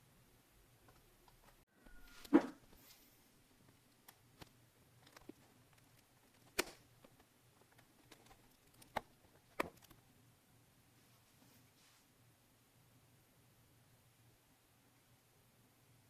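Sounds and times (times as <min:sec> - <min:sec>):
plastic and metal parts clicking: 0:04.0 - 0:09.9.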